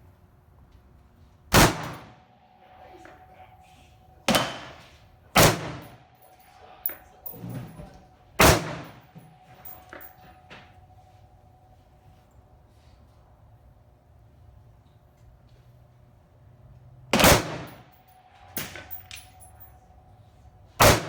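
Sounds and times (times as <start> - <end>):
metallic ring: 6.2 - 7.9, 8.8 - 10.6, 17.7 - 19.9.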